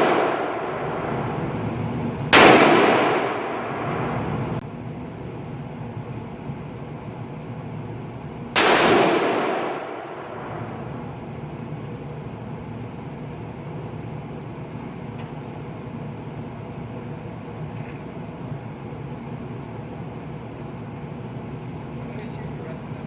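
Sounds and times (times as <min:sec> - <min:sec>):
gunshot with echo: 0:00.0 - 0:01.1, 0:02.3 - 0:04.0, 0:08.6 - 0:10.6
low rumble: 0:00.0 - 0:23.0.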